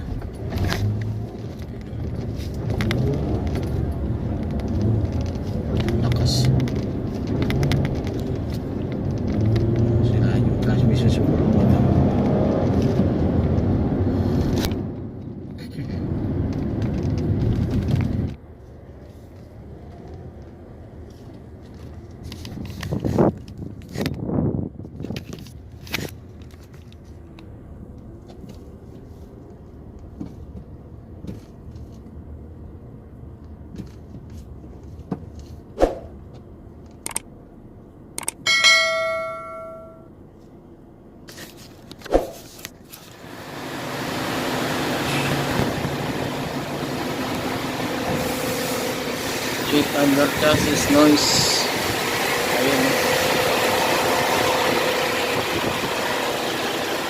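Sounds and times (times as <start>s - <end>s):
car low rumble driving: 0.0s - 57.0s
rushing vehicle noise: 0.0s - 57.0s
sharp clicks: 36.9s - 37.3s, 38.2s - 38.4s
chime ringing: 38.5s - 40.1s.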